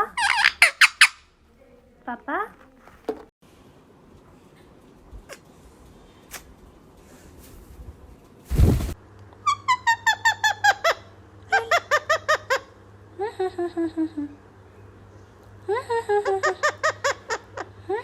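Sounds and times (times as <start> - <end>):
parrot laughing calls: 0.0 - 1.2, 9.4 - 12.8, 15.7 - 18.0.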